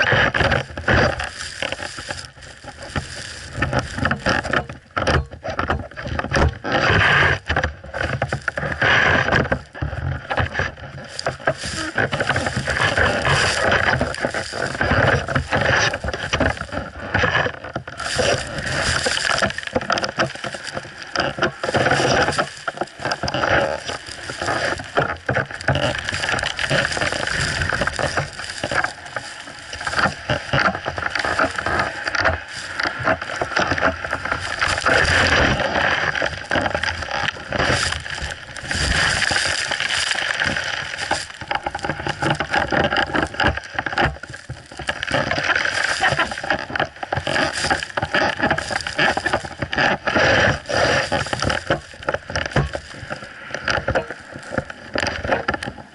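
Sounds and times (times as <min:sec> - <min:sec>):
snowboard scraping over icy snow: 0:00.0 - 0:55.9.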